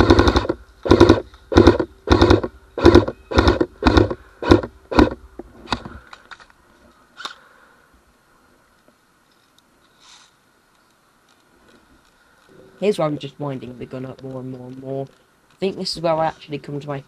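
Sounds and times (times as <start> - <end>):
airsoft rifle bursts: 0.0 - 5.2.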